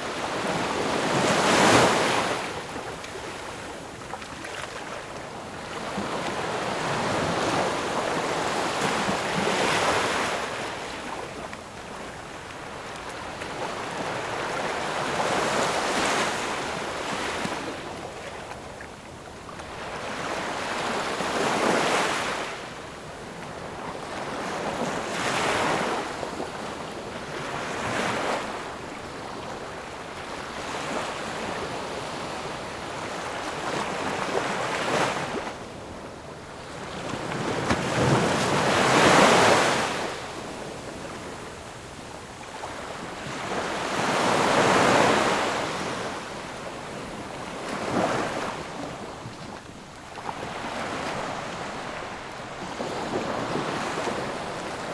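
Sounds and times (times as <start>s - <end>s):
ocean waves washing in and out: 0.0s - 54.9s.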